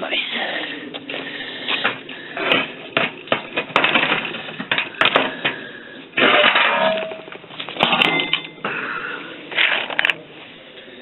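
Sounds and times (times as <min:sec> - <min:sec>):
metal objects clinking: 0:06.2 - 0:08.7.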